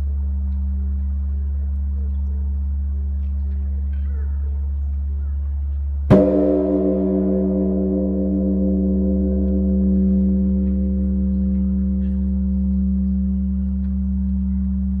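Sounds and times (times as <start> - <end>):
temple bell ringing: 6.1 - 15.0.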